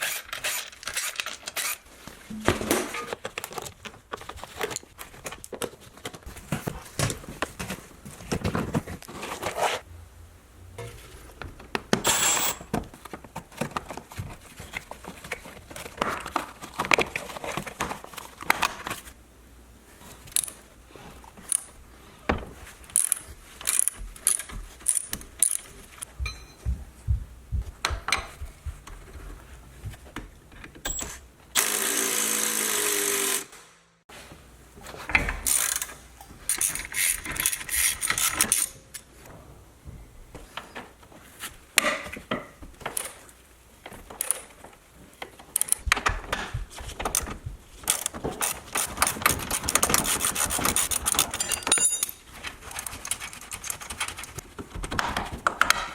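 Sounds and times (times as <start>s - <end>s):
hand tool ratcheting: 0.0s - 1.8s, 23.0s - 25.7s
power tool running: 31.6s - 33.7s.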